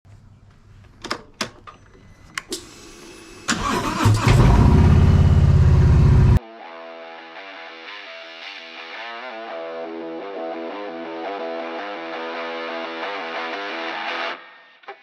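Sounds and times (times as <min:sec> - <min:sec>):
car engine cranking and starting: 0:02.5 - 0:06.4
car engine running: 0:03.5 - 0:06.4.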